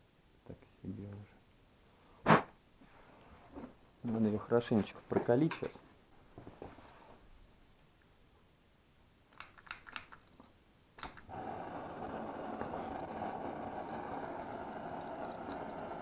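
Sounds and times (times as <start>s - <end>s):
gas torch hissing: 11.2s - 16.0s.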